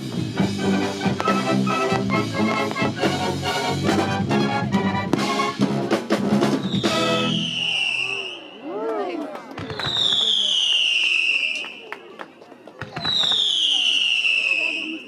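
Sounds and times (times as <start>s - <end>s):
military band playing: 0.0s - 7.8s
whistling firework: 6.6s - 12.1s, 12.8s - 15.0s.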